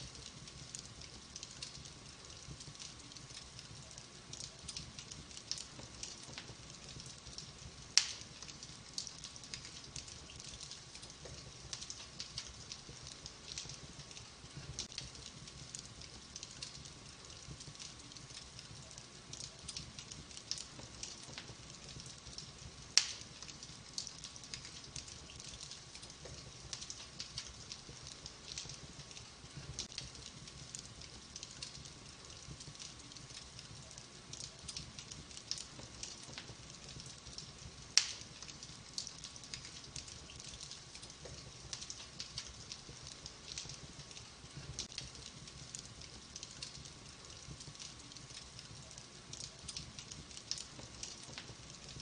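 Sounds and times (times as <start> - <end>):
wood fire crackling: 0.0 - 52.0
loud fire pops: 4.6 - 15.8, 19.4 - 29.0, 34.4 - 44.0.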